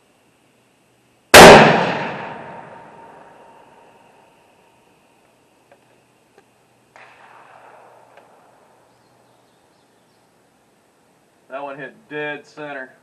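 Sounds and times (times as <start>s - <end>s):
rifle shot with echo: 1.3s - 3.4s, 6.9s - 8.7s.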